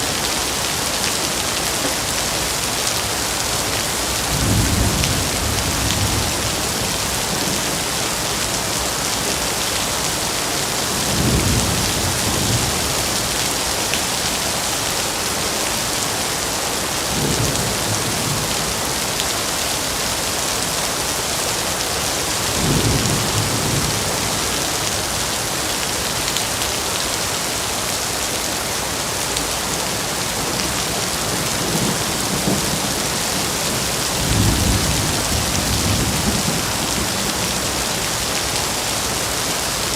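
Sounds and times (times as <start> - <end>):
heavy rain on foliage: 0.0 - 39.9.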